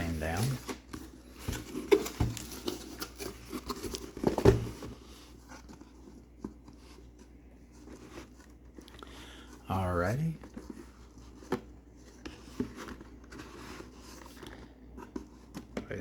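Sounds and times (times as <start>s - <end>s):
cardboard box handling knocks: 1.5s - 2.6s, 4.1s - 5.0s.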